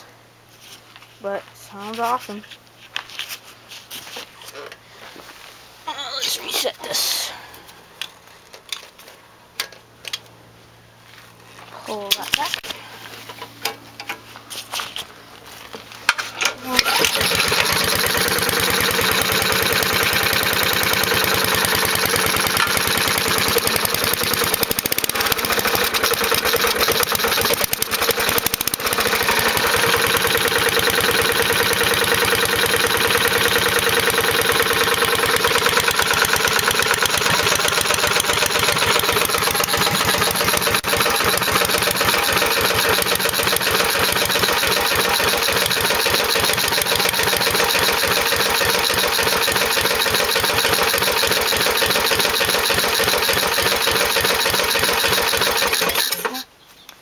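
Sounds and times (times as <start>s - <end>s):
small engine idling: 16.6s - 56.4s.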